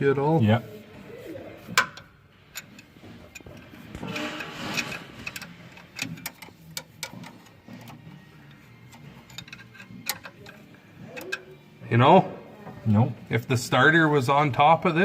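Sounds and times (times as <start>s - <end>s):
wrenches clinking against metal: 1.7s - 11.7s.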